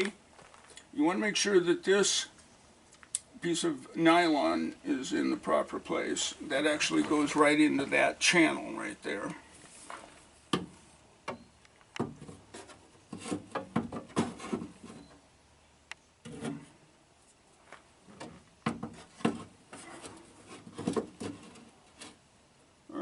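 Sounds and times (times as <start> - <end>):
scraping and rubbing: 12.2 - 15.0, 16.2 - 22.2.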